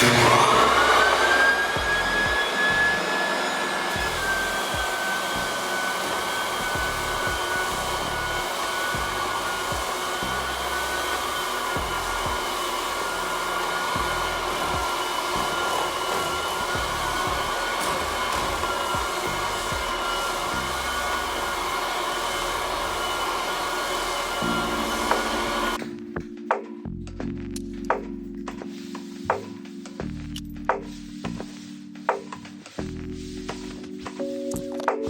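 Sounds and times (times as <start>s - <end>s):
electric motor whirring: 0.0s - 25.8s.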